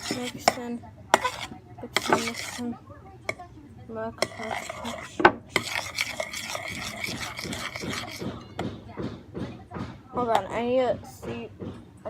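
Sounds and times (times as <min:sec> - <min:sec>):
spoon scraping bowl: 0:00.0 - 0:02.7, 0:04.2 - 0:08.5
spoon clinking against bowl: 0:04.2 - 0:08.2.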